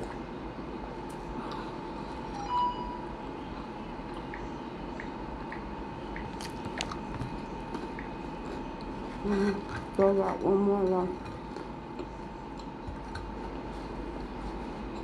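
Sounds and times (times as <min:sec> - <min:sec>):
chewing sandwich: 0:04.0 - 0:15.0.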